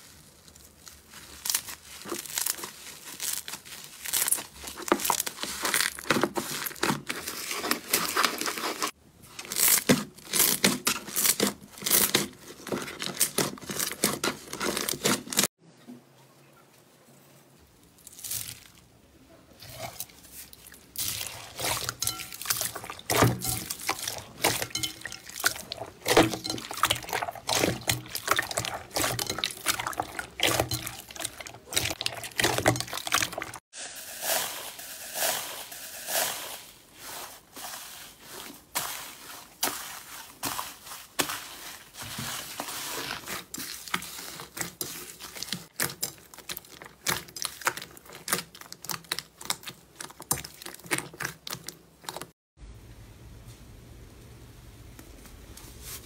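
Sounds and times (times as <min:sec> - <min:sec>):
slime squelching by hand: 0:00.0 - 0:15.5, 0:17.9 - 0:52.3
slime clicking and crackling: 0:43.0 - 0:52.3.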